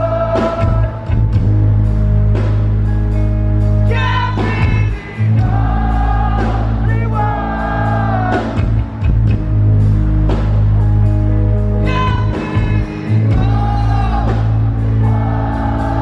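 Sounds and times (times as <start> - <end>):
heavy bass: 0.0 - 16.0
rock band playing live: 0.0 - 16.0
person singing: 3.8 - 8.6, 11.8 - 16.0.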